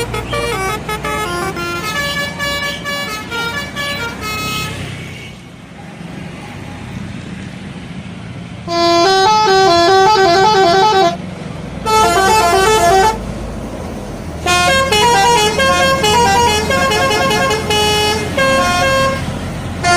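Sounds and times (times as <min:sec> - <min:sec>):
bus musical horn tune: 0:00.0 - 0:05.4, 0:08.6 - 0:11.2, 0:11.8 - 0:13.3, 0:14.4 - 0:19.9.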